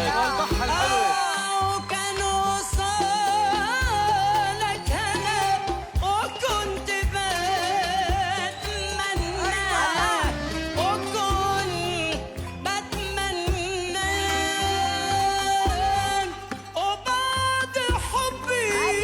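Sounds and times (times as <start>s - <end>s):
live band playing: 0.0s - 19.0s.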